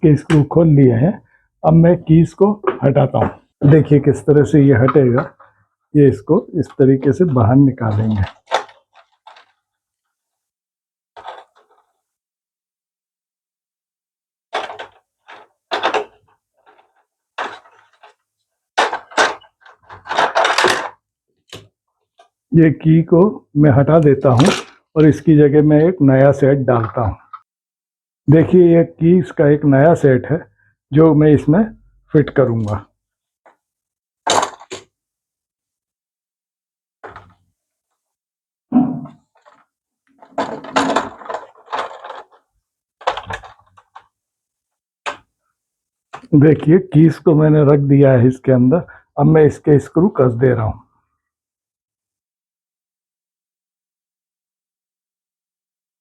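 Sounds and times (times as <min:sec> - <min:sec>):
plastic keys clattering and knocking: 0:07.9 - 0:09.6, 0:14.6 - 0:18.2, 0:18.8 - 0:21.0, 0:40.2 - 0:44.1
plastic keys clattering: 0:08.1 - 0:09.6, 0:40.2 - 0:42.4.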